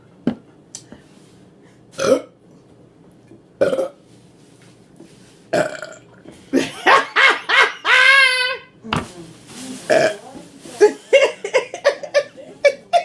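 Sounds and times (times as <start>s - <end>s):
woman burping loudly: 2.0s - 2.4s, 3.6s - 4.0s, 5.5s - 6.1s, 9.9s - 10.2s.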